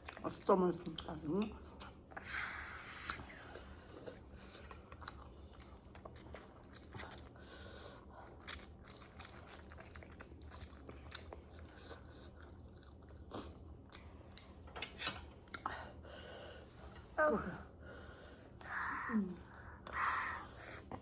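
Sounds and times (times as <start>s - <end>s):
person chewing and biting food: 4.1s - 7.4s, 8.3s - 14.5s.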